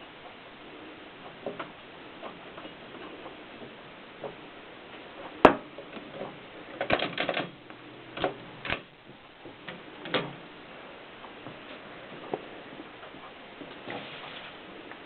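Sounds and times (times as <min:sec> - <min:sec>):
typewriter clacking: 0:06.7 - 0:07.6.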